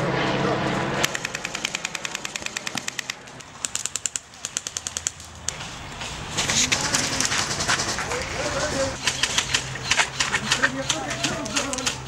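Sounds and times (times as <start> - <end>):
airsoft gun bursts: 6.6 - 12.0.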